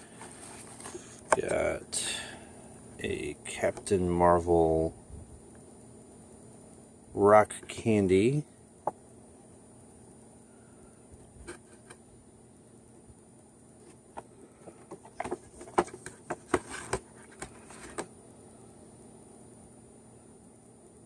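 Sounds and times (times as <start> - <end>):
packaging clicks taps and rustles: 14.2 - 18.1.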